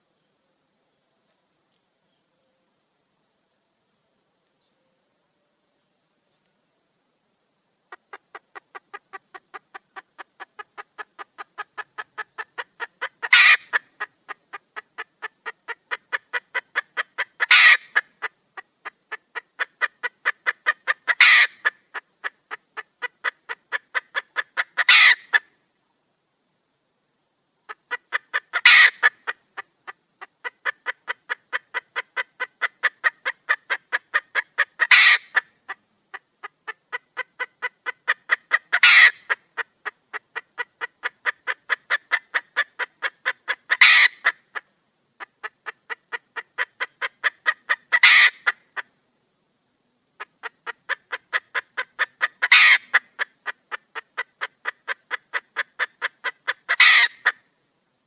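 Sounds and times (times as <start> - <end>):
hen clucking: 7.9 - 25.6, 27.6 - 49.0, 50.2 - 57.4
hen calling loudly: 8.3 - 18.2, 19.6 - 21.8, 22.8 - 25.4, 27.9 - 29.4, 32.0 - 44.6, 45.2 - 48.8, 50.2 - 57.4.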